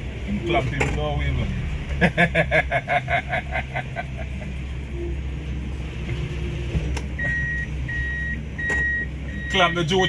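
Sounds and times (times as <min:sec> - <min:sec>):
car engine rumble: 0:00.0 - 0:10.0
road noise: 0:00.0 - 0:10.0
electronic beeps: 0:07.2 - 0:10.0.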